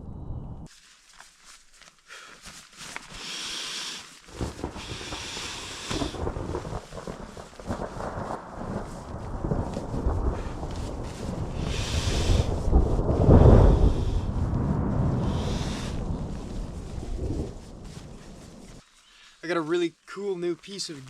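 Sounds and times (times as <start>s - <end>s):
thunder rumbling: 4.4s - 18.8s.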